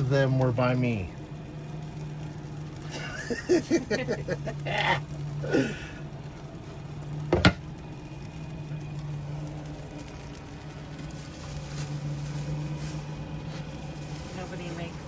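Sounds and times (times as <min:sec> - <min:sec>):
steady low hum: 0:00.0 - 0:15.0
utensil knocking frying pan: 0:07.3 - 0:07.7.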